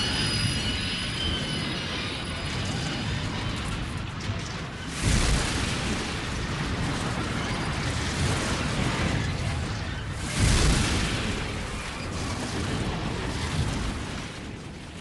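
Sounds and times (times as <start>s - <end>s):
loud train crash: 0.0s - 13.6s.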